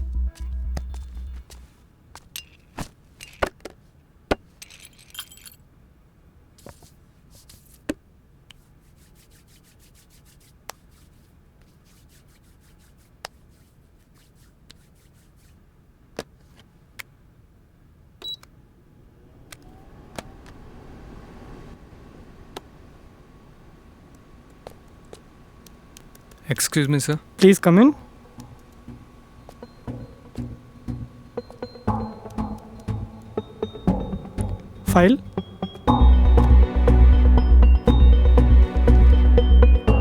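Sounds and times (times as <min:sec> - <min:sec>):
music with heavy low beat: 0:00.0 - 0:01.7, 0:28.4 - 0:40.0
jingling rattle: 0:04.6 - 0:05.6.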